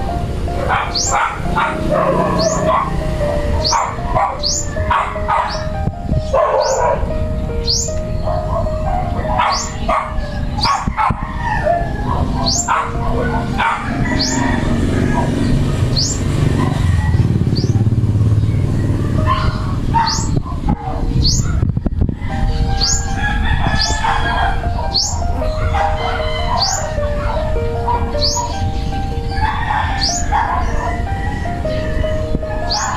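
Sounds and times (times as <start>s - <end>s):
small bird chirping: 2.3s - 2.8s, 3.6s - 6.8s, 7.5s - 10.9s, 12.4s - 13.0s, 15.4s - 16.3s, 17.1s - 20.5s.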